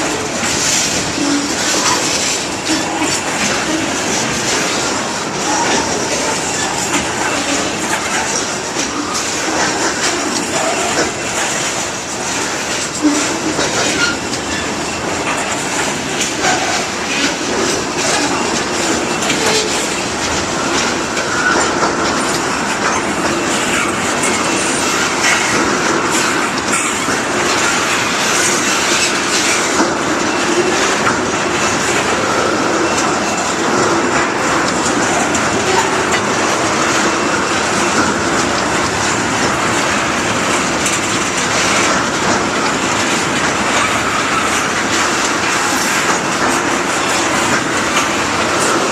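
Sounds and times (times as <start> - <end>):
train wheels clattering on rails: 0.0 - 48.9.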